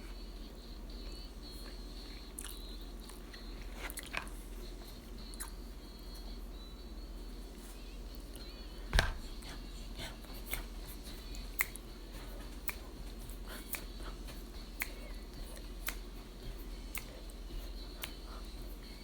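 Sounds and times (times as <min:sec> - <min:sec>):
chewing and utensil clicks: 0:01.0 - 0:05.6, 0:09.2 - 0:19.0.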